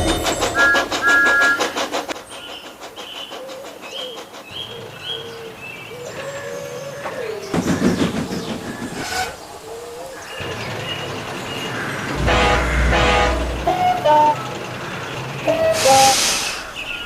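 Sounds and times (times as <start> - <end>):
steam locomotive whistle: 0.0 - 1.8, 12.1 - 14.6, 15.5 - 16.7
rumbling burst: 0.0 - 2.1, 11.7 - 15.0
steam locomotive chuffing: 0.0 - 6.2, 7.5 - 9.7, 10.4 - 17.0.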